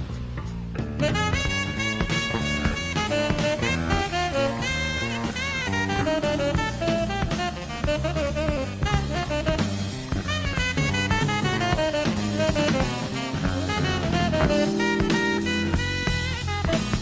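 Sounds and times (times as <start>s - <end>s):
live jazz band playing: 0.8s - 17.0s.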